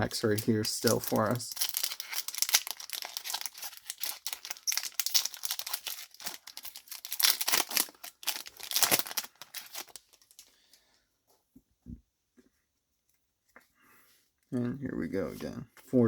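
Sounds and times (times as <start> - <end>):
foil wrapper tearing and crinkling: 0.0 - 10.5.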